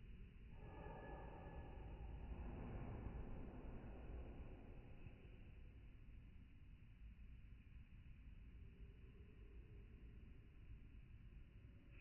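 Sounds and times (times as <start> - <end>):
low rumble: 0.0 - 6.6.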